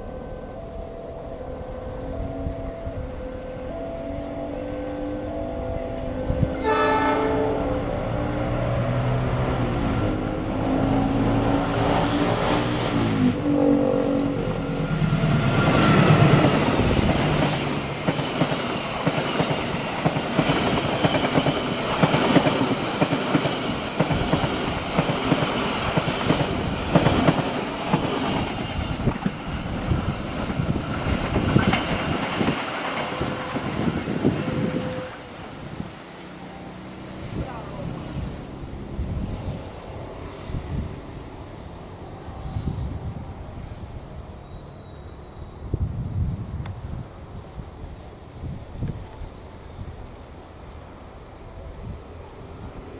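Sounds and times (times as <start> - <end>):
train passing with rushing rumble: 0.0 - 52.9
train horn: 1.9 - 19.2, 26.4 - 35.9
wheels clacking over rail joints: 5.3 - 38.9.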